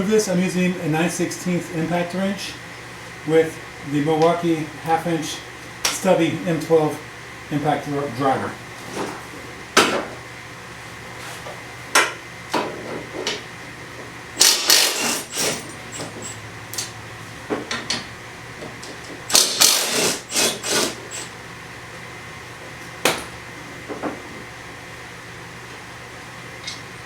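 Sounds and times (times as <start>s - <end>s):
impact driver hammering: 14.4s - 16.2s, 19.3s - 21.3s.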